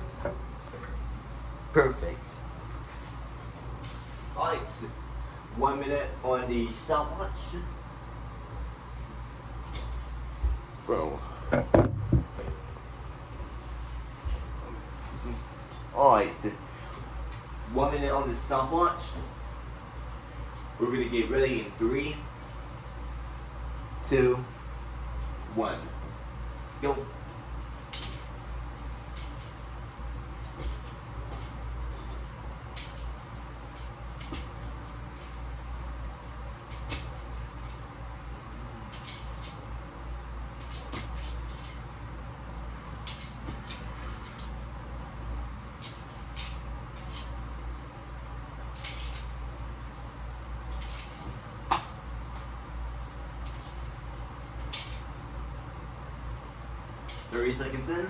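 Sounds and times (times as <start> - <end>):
steady low hum: 0.0 - 58.0
metal handcuffs clinking: 3.8 - 4.6, 9.2 - 10.2, 22.4 - 24.1, 27.2 - 35.8, 36.7 - 37.9, 38.9 - 42.1, 42.7 - 44.8, 45.8 - 47.8, 48.6 - 55.1, 56.4 - 57.6.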